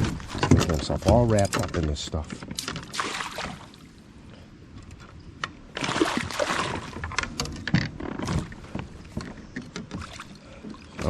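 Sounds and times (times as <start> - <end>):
water splashing: 2.6 - 4.0, 5.7 - 7.2.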